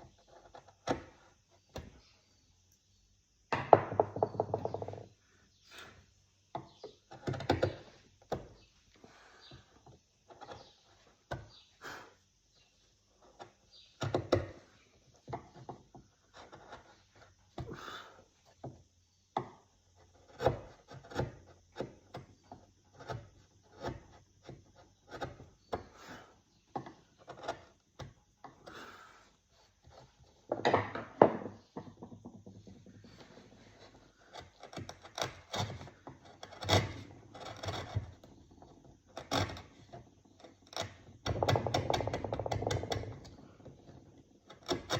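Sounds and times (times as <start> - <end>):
hand tool carving wood: 0.0 - 2.3, 5.7 - 30.6, 31.6 - 44.9.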